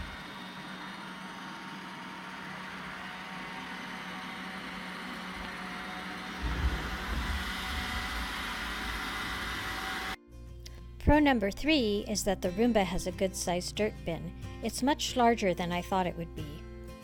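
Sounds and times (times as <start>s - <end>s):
robot vacuum whirring: 0.0s - 10.2s
low thumps: 6.3s - 9.8s.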